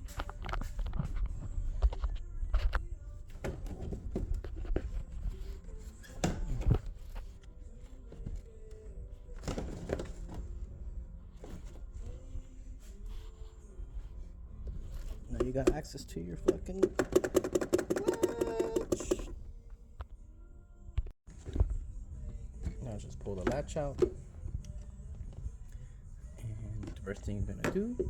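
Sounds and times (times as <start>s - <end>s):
plastic trim knocking and rubbing: 14.7s - 19.3s.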